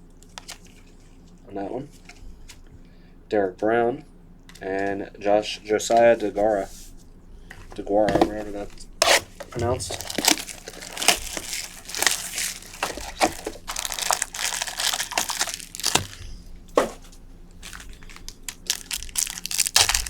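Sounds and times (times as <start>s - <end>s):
cards being handled: 5.9s - 20.0s
foil wrapper crinkling and tearing: 8.4s - 16.4s, 17.1s - 20.0s.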